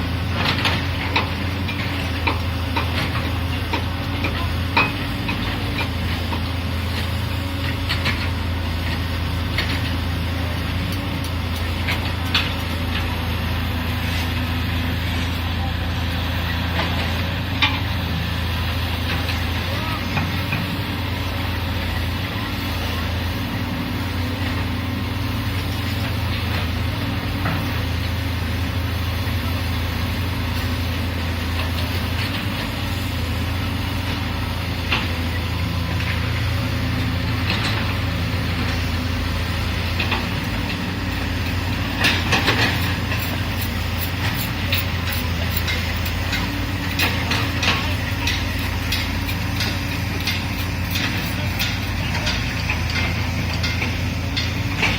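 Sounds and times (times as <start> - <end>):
excavator diesel engine running: 0.0 - 54.9
metallic clanks and knocks: 42.0 - 54.9.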